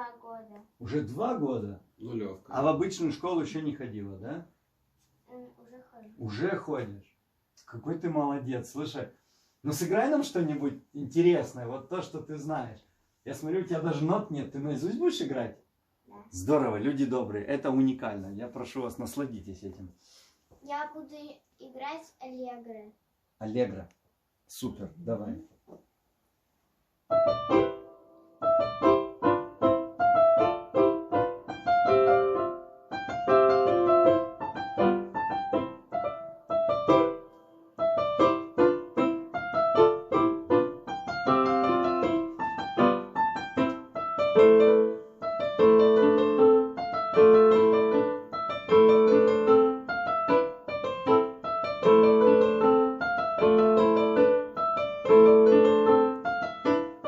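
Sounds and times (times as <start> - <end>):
solo piano playing: 27.1 - 57.0.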